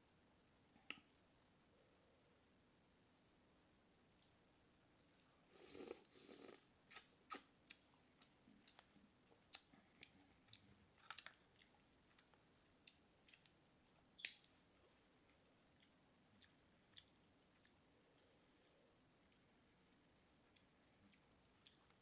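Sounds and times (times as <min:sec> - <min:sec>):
chewing and lip-smacking: 0:06.9 - 0:13.6, 0:14.2 - 0:22.0.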